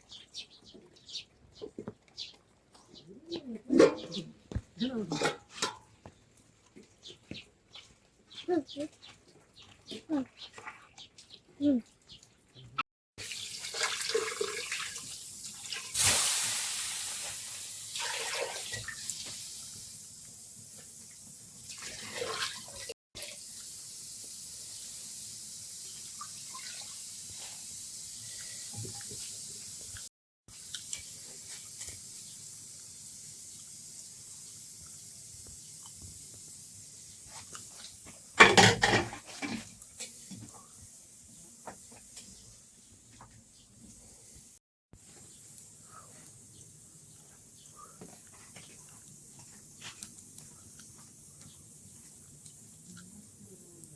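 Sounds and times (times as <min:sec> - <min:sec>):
running water hissing: 0:13.2 - 0:43.2, 0:43.8 - 0:53.9.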